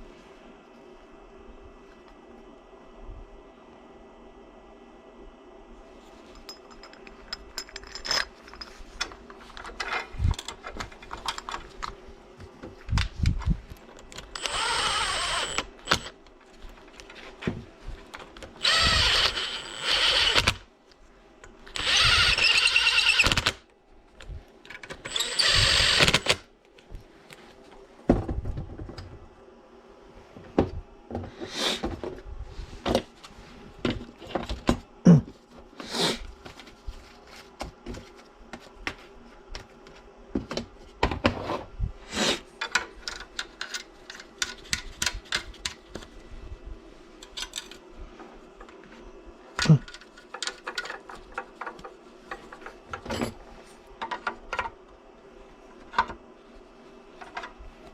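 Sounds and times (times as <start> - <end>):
handling clicks and knocks: 6.4 - 14.4
power tool bursts: 14.4 - 16.1, 18.6 - 20.6, 21.7 - 23.6, 25.1 - 26.4.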